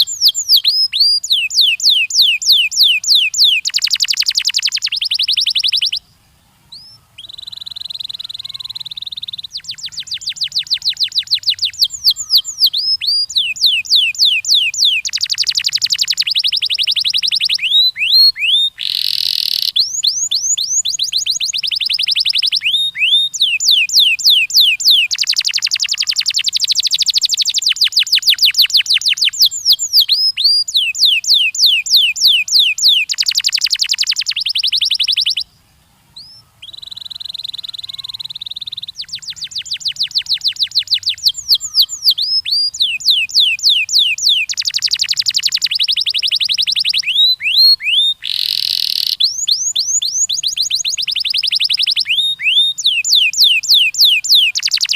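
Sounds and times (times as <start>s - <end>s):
canary singing trills: 0.0s - 54.9s.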